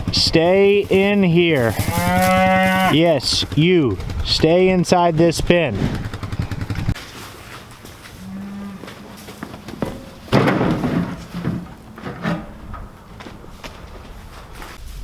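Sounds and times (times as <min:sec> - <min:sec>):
cattle mooing: 0:00.7 - 0:03.2, 0:08.2 - 0:09.4.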